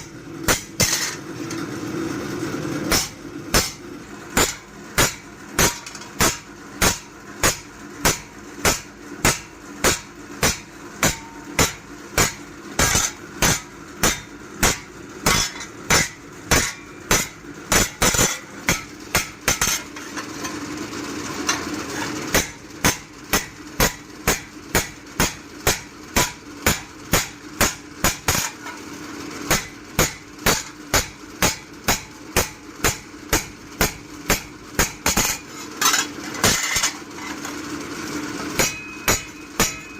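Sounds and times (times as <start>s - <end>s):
hammer striking metal blade: 0.5s - 1.2s, 2.9s - 3.8s, 4.4s - 20.6s, 21.4s - 28.8s, 29.5s - 37.5s, 38.6s - 39.9s.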